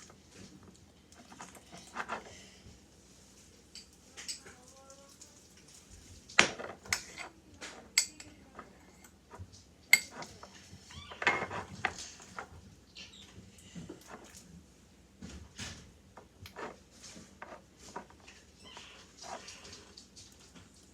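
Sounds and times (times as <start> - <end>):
fork clinking and scraping a bowl: 6.5 - 9.2, 9.9 - 10.4.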